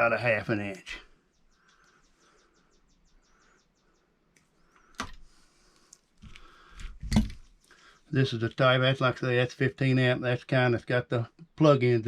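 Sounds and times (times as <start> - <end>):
bird chirping faintly: 0.0 - 5.4.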